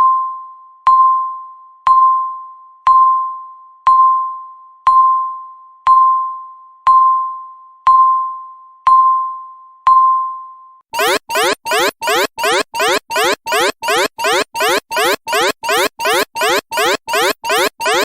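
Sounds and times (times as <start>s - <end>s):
countdown timer beeps: 11.0s - 18.0s
pulsing alarm with rising sweeps: 11.0s - 18.0s.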